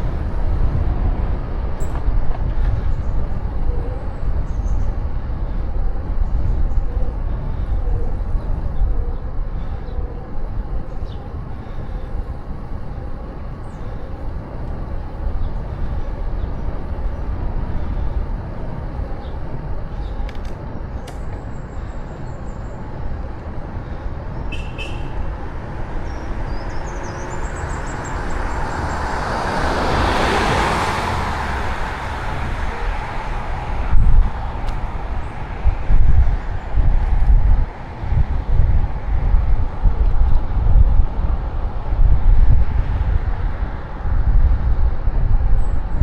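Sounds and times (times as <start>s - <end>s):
wind rumble on microphone: 0.0s - 46.0s
vehicle passing: 21.8s - 46.0s.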